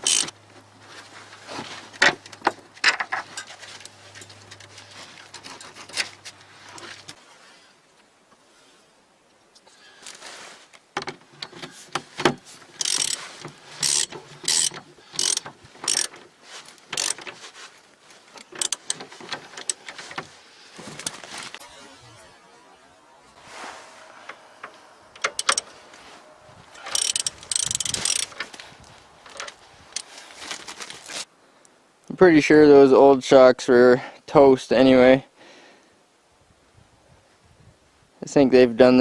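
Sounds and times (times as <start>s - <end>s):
ratchet wrench clicking: 0.0s - 0.3s, 12.8s - 16.2s, 16.8s - 17.3s, 18.4s - 19.0s, 25.2s - 25.7s, 26.8s - 28.4s.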